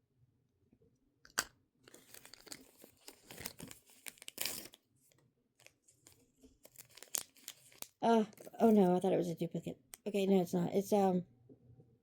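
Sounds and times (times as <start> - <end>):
plastic packaging crinkling: 1.9 - 4.8, 5.6 - 9.0.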